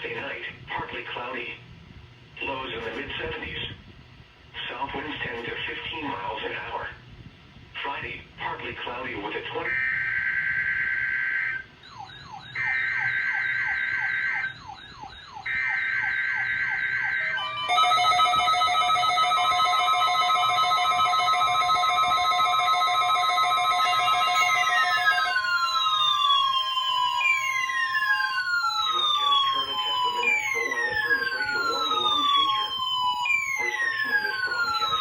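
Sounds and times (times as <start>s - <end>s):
warbling siren-like alarm: 9.5s - 35.0s
falling siren-like sweeps: 9.7s - 35.0s
multi-tone pulsing alert: 9.7s - 35.0s
digital data screech: 11.4s - 17.7s, 27.4s - 35.0s.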